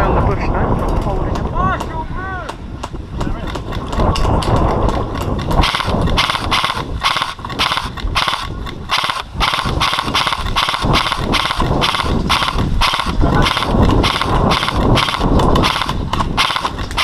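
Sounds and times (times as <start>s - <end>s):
low microphone rumble: 0.0s - 17.0s
airsoft guns firing: 3.5s - 17.0s.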